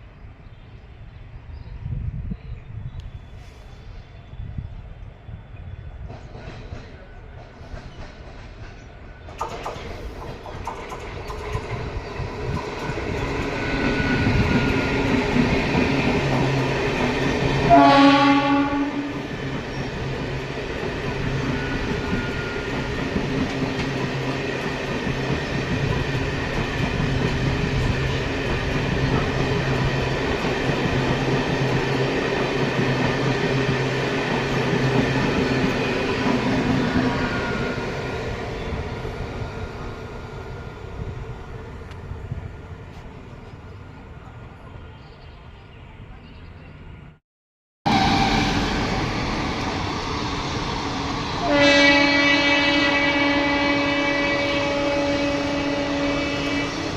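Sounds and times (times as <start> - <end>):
train rumbling past: 0.0 - 47.2, 47.9 - 56.9
train horn: 17.6 - 19.3, 51.4 - 56.9.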